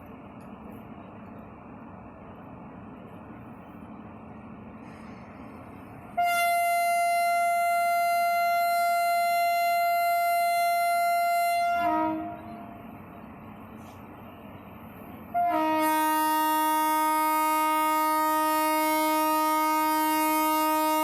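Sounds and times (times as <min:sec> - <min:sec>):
locomotive air horn: 0:06.1 - 0:12.8, 0:15.3 - 0:21.0.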